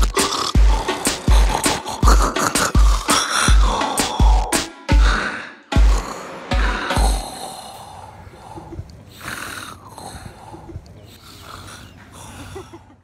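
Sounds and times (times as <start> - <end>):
deep beat thumps: 0.0 - 7.3
man snoring: 0.0 - 12.6.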